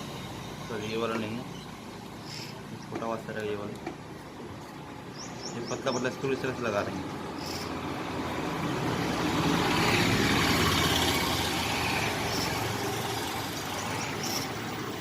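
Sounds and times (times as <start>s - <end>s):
vehicle engine passing by: 5.7s - 15.0s.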